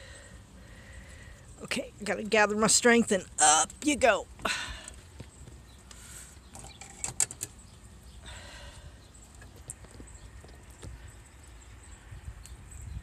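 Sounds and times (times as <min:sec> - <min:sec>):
handling clicks and knocks: 0:06.5 - 0:07.6.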